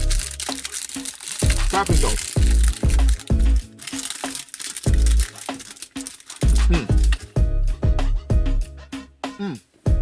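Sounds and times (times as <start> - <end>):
music with deep bass hits: 1.5 - 3.6, 6.4 - 8.7.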